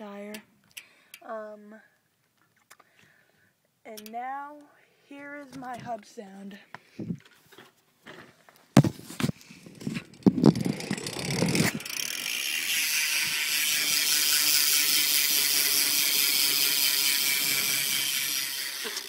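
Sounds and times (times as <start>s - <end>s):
bike hub freewheeling buzz: 9.6s - 19.0s.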